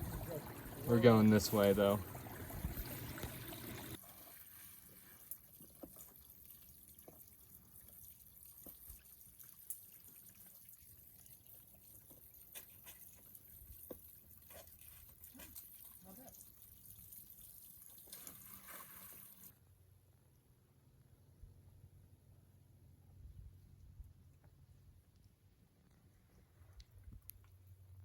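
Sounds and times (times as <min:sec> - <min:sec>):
faint water drips: 0:00.0 - 0:19.5.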